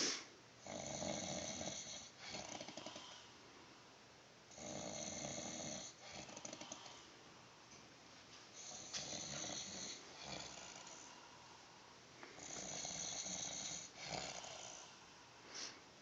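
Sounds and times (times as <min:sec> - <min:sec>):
man snoring: 0:00.0 - 0:03.0, 0:04.5 - 0:06.8, 0:08.6 - 0:11.1, 0:12.4 - 0:14.9.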